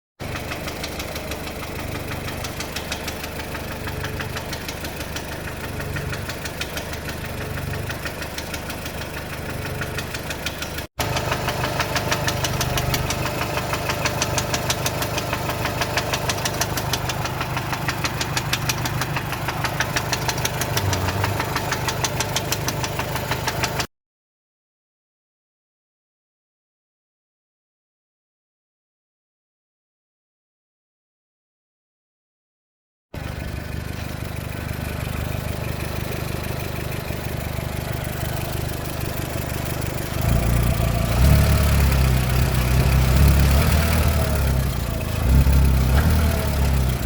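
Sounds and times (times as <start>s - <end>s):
engine idling with knock: 0.2s - 23.9s, 33.2s - 47.0s.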